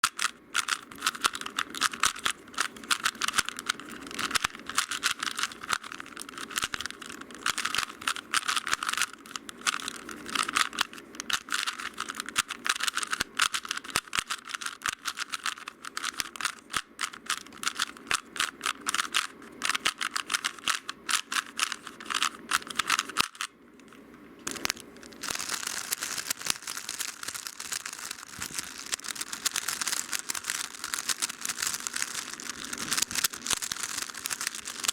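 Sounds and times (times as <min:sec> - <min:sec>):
puzzle cube plastic clicking: 0:00.0 - 0:34.9
puzzle cube hissy turning: 0:00.1 - 0:23.5, 0:24.4 - 0:34.9.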